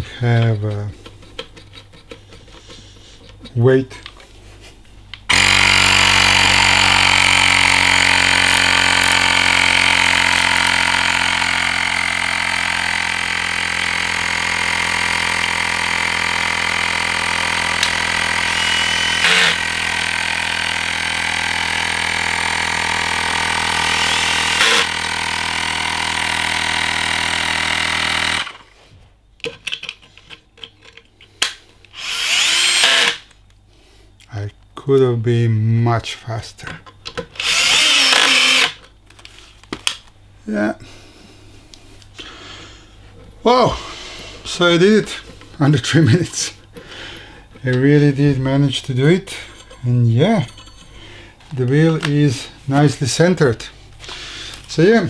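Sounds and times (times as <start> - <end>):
small electric motor tool running: 5.3 - 28.7, 32.0 - 33.3, 37.4 - 38.8
short clatters: 49.3 - 51.6.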